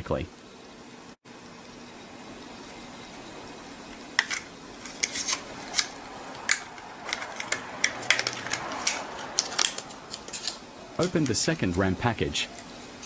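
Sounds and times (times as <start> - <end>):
plastic packaging crackling: 4.2 - 11.8.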